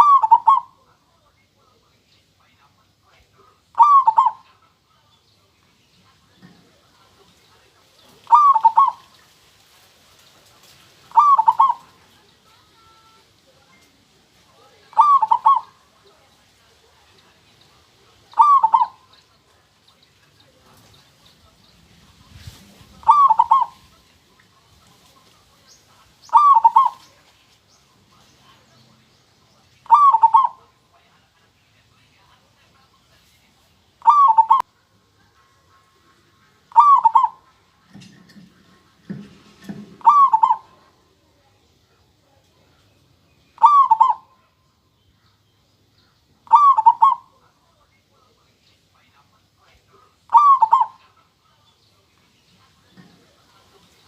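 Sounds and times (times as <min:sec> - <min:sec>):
dove cooing: 0:00.0 - 0:00.9, 0:03.7 - 0:04.4, 0:08.0 - 0:09.4, 0:10.6 - 0:13.6, 0:14.6 - 0:16.2, 0:16.8 - 0:25.3, 0:26.2 - 0:27.2, 0:29.8 - 0:30.8, 0:34.0 - 0:34.7, 0:36.6 - 0:41.0, 0:43.6 - 0:44.4, 0:46.4 - 0:47.4, 0:50.3 - 0:51.2.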